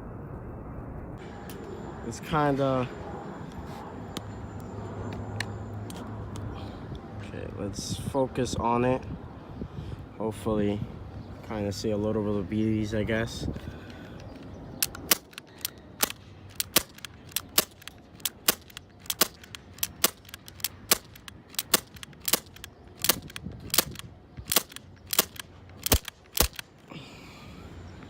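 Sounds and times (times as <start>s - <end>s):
airsoft pistol firing pops: 14.8s - 26.6s.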